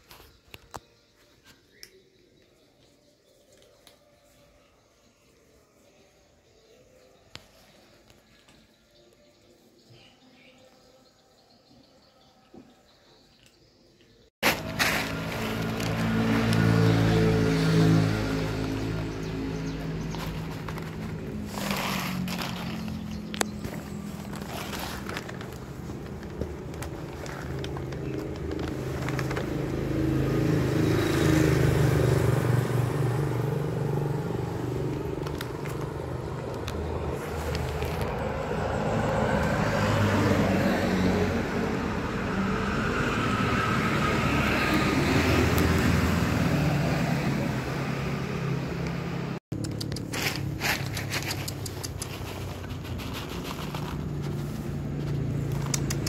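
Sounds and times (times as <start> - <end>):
vehicles passing: 14.4 - 56.0.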